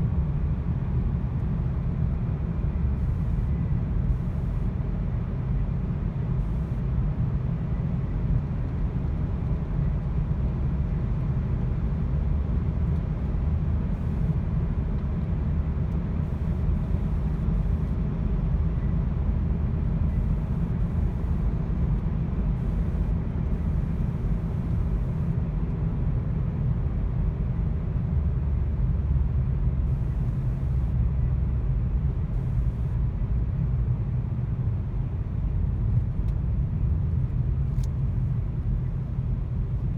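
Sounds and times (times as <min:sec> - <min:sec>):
car engine and road rumble: 0:00.0 - 0:39.9.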